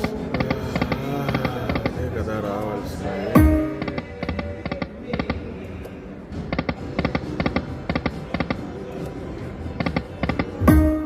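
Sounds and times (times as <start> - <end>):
murmur of casino floor: 0.0 - 11.0.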